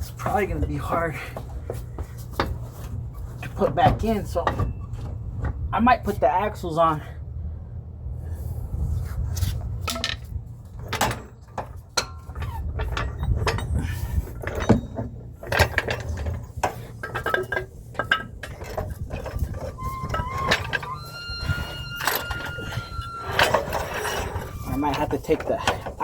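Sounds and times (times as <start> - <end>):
steady low rumble: 0.0 - 26.0
metal tools clinking: 10.9 - 26.0.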